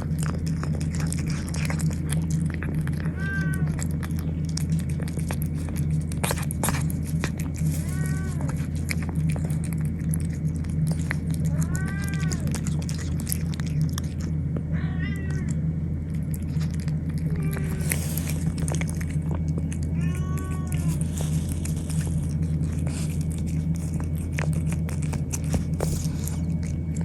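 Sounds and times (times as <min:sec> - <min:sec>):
steady low hum: 0:00.0 - 0:27.0
cat meowing: 0:03.0 - 0:04.0, 0:07.8 - 0:08.7, 0:11.5 - 0:12.8, 0:14.7 - 0:15.6, 0:17.3 - 0:18.4, 0:19.9 - 0:21.1.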